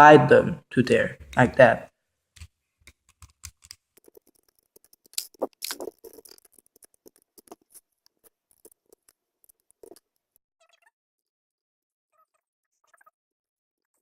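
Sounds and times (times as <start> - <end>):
plastic puzzle pieces clicking: 2.4 - 10.3.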